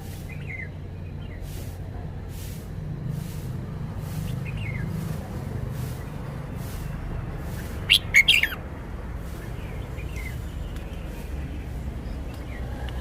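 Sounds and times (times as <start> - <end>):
bird chirps: 0.2 - 1.6, 7.4 - 8.6, 9.3 - 12.9.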